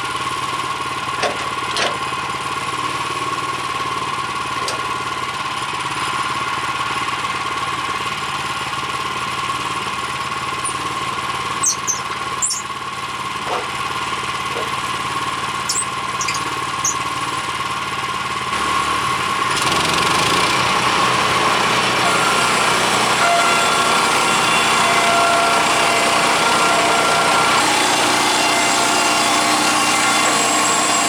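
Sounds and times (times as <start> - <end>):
sawmill gas engine running: 0.0 - 31.0
short high squeaks: 10.6 - 11.0, 11.6 - 12.7, 15.7 - 17.1.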